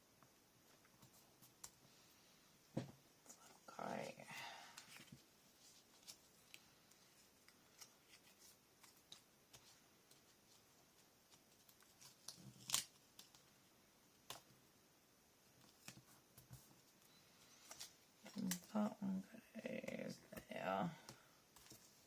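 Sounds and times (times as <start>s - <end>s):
paper ticks and rustles: 21.1s - 22.0s.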